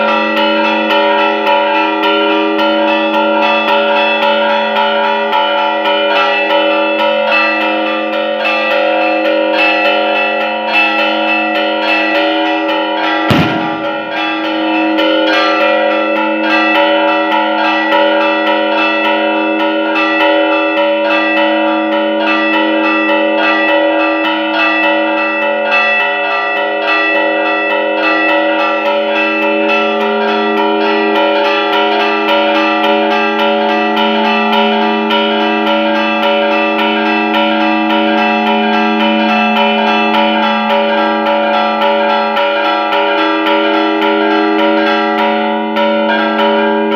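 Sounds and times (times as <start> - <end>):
church bells ringing rapidly: 0.0 - 46.9
loud thump: 13.3 - 14.2.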